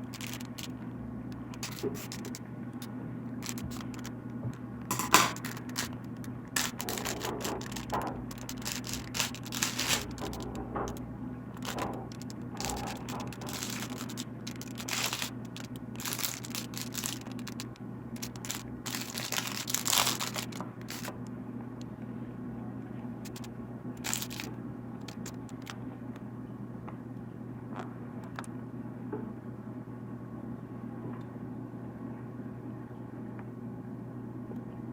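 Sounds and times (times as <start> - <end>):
packaging crinkling and tearing: 0.0 - 0.7, 1.4 - 2.4, 3.4 - 4.1, 4.9 - 11.0, 11.6 - 21.2, 23.2 - 25.8
steady low hum: 0.0 - 34.9.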